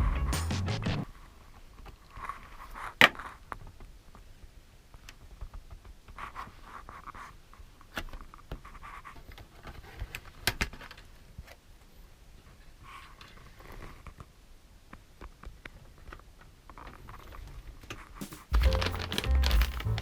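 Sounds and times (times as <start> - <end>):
soft scraping and rustling: 12.4 - 14.3
small hard parts clicking: 18.2 - 20.0.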